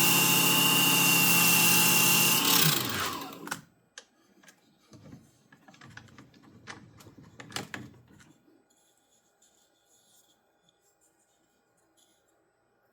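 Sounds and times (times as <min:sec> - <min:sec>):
wood lathe motor spinning down: 0:00.0 - 0:03.6.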